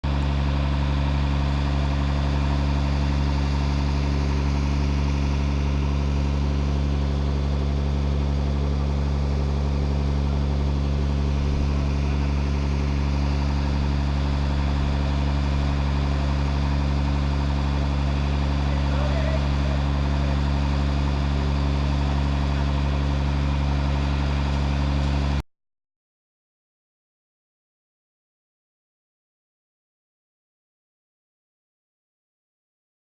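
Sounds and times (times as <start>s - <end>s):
vehicle engine idling: 0.0s - 25.4s.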